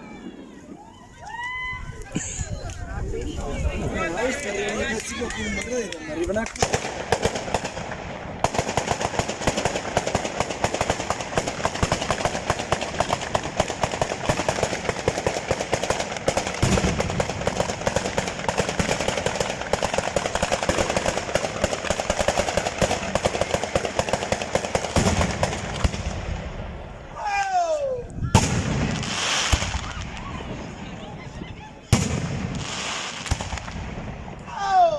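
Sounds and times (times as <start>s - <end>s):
rapid firework bangs: 6.2s - 26.7s, 28.3s - 30.3s, 31.9s - 34.3s
deep firework boom: 28.3s - 30.4s, 31.9s - 34.2s.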